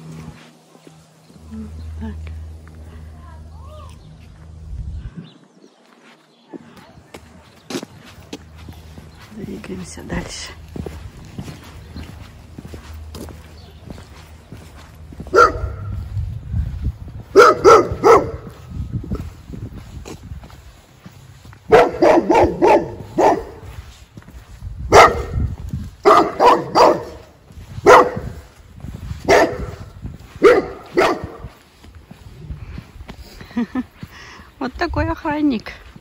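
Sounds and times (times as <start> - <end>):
dog barking: 15.3 - 16.0, 17.3 - 18.5, 21.7 - 23.7, 24.9 - 28.4, 29.2 - 31.5.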